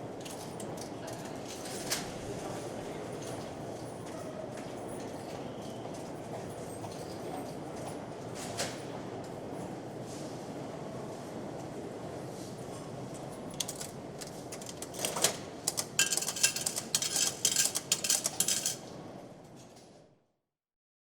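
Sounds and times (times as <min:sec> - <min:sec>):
metallic clinking and rattling: 0:13.5 - 0:18.8.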